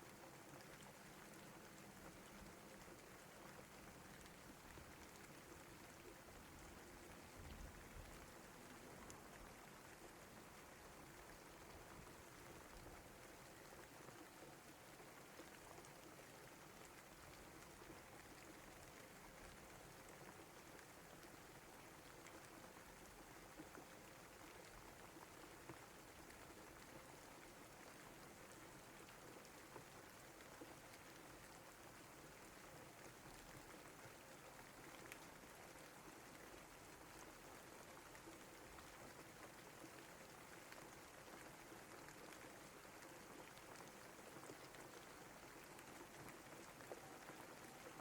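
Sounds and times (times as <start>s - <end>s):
faint steady rain: 0.0s - 48.0s
rain drops ticking: 0.0s - 48.0s.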